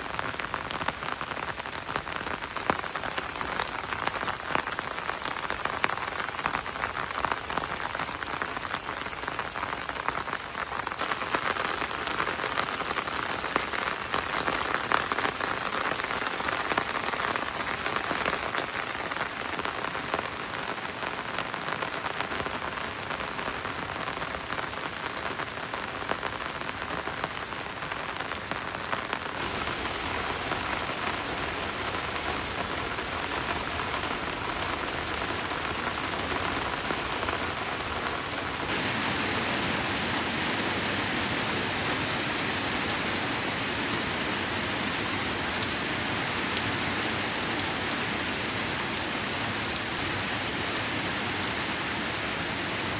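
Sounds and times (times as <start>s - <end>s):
rain falling: 0.0s - 52.9s.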